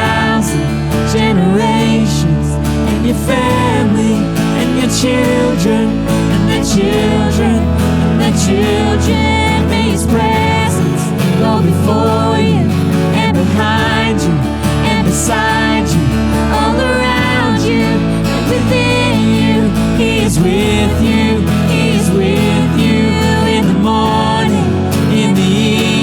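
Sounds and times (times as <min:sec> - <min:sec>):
bass guitar: 0:00.0 - 0:26.0
guitar: 0:00.0 - 0:26.0
voices singing: 0:00.0 - 0:26.0.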